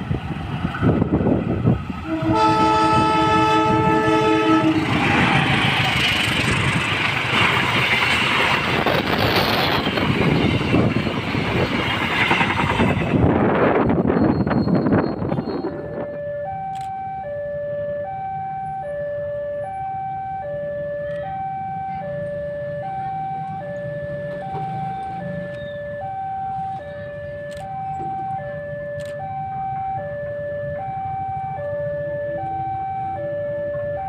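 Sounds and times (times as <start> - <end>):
level crossing alarm: 13.8 - 34.0.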